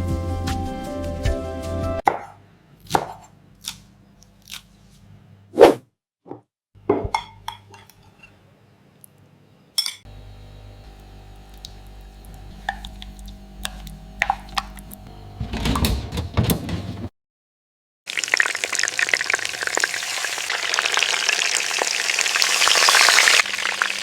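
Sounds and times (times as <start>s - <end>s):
utensils clinking on pots and dishes: 9.8s - 10.1s.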